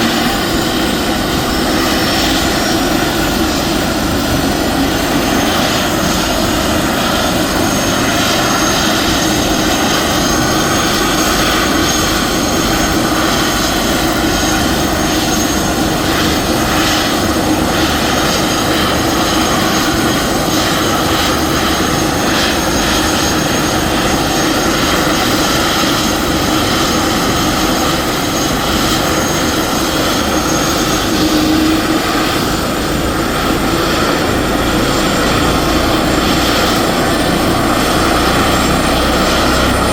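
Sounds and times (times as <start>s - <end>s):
helicopter running: 0.0s - 39.9s.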